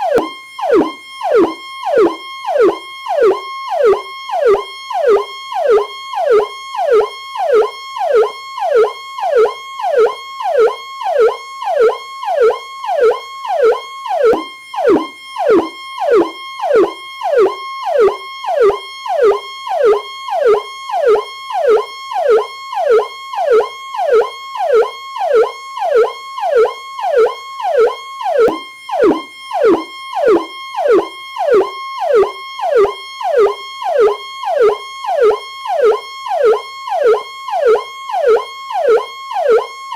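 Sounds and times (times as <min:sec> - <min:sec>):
electronic police siren: 0:00.0 - 0:39.9.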